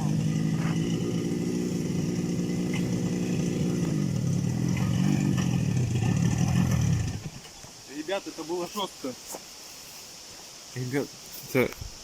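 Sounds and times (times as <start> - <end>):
two-stroke motorcycle engine revving: 0.0 - 7.5.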